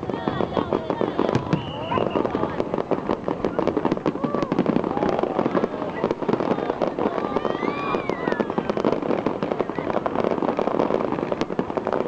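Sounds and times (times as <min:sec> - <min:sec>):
fireworks crackling and popping: 0:00.0 - 0:12.0.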